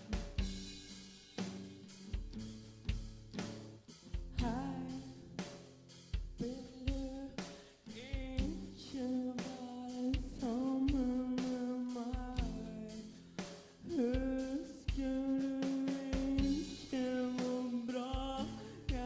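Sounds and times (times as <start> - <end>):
pop music with drum beat: 0.0 - 19.0
person singing: 4.4 - 5.1, 6.4 - 13.1, 13.9 - 19.0.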